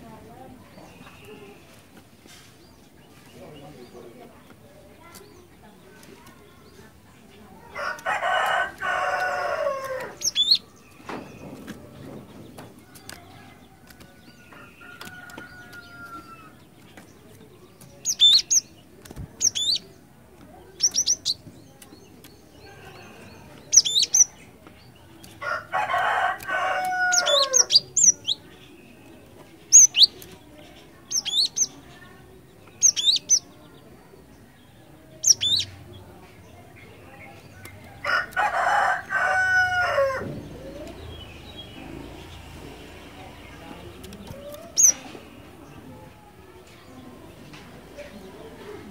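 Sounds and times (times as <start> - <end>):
bird chirping: 8.6 - 25.3, 26.6 - 37.8.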